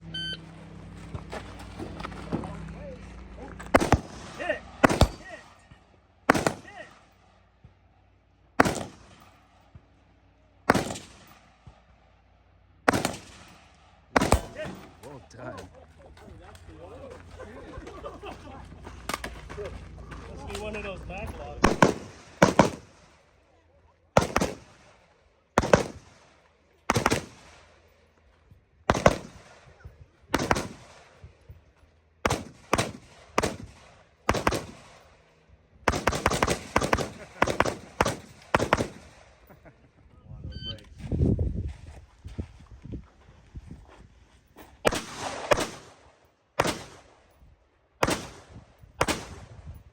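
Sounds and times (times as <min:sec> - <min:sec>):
rifle shots with echo: 0:03.7 - 0:07.4, 0:08.6 - 0:09.7, 0:10.6 - 0:12.2, 0:12.8 - 0:15.1, 0:21.6 - 0:23.4, 0:24.1 - 0:28.1, 0:28.8 - 0:31.5, 0:32.2 - 0:39.5, 0:44.8 - 0:47.4, 0:48.0 - 0:49.8.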